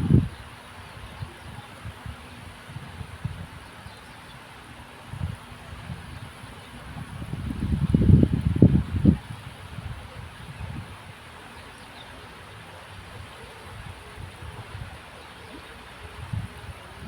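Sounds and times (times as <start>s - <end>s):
wind buffeting microphone: 0.0s - 4.0s, 5.0s - 11.4s, 16.0s - 17.0s.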